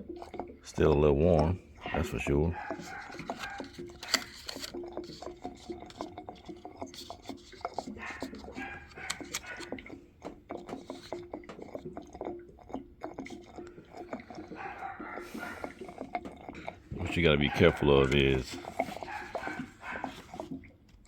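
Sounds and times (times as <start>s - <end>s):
metal fitting clicking and scraping: 2.6s - 11.7s.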